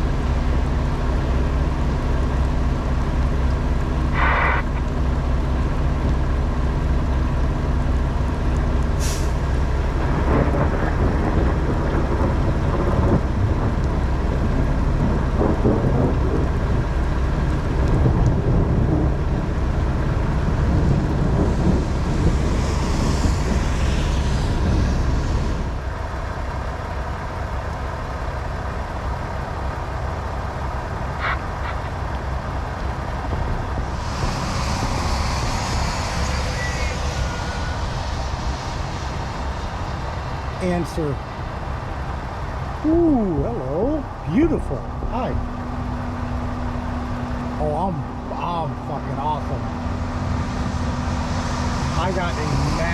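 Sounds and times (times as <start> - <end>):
truck engine droning: 0.0 - 52.9
air hiss: 9.0 - 9.4, 33.8 - 41.1, 49.8 - 52.9.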